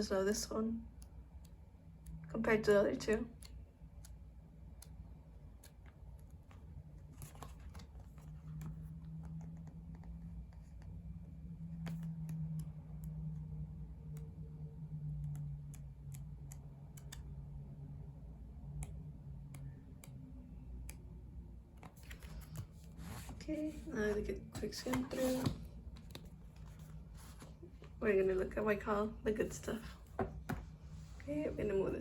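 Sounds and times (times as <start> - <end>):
low steady hum: 0.0 - 32.0
photo book pages flipping: 5.6 - 10.9, 21.8 - 23.9, 24.6 - 28.0.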